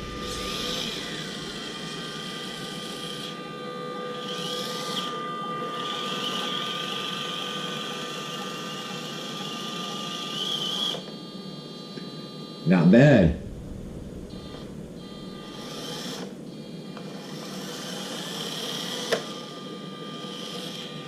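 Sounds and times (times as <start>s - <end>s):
electric motor and gears whirring: 0.0s - 11.3s, 13.4s - 16.3s, 17.0s - 21.0s.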